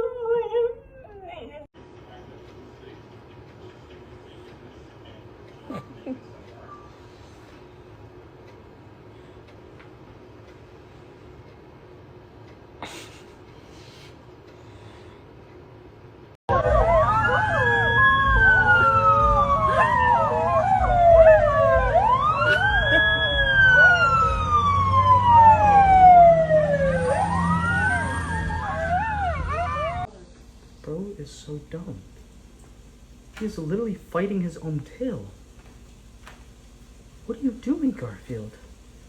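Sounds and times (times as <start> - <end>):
siren wailing: 16.5 - 30.1.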